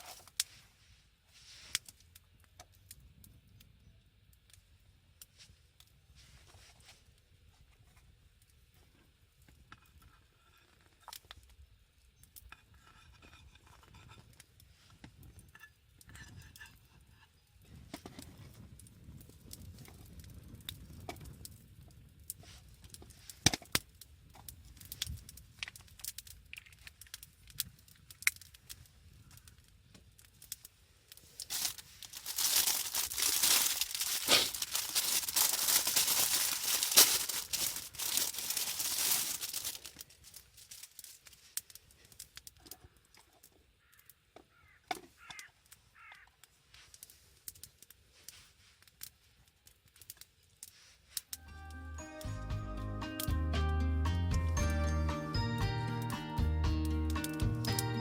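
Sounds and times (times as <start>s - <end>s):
food packaging crinkling and tearing: 0.0s - 0.6s, 30.1s - 42.9s.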